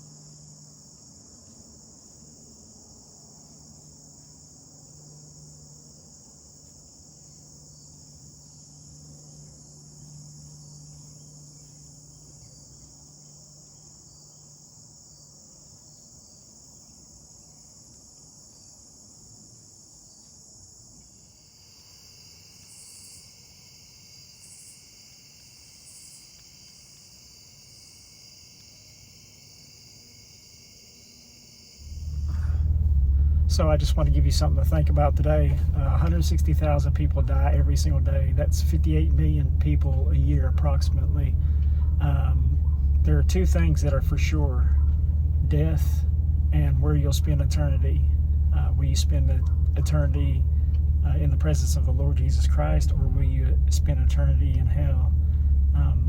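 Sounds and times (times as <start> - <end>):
lower-pitched insect trill: 0.0 - 33.8
insects trilling chorus: 0.0 - 56.0.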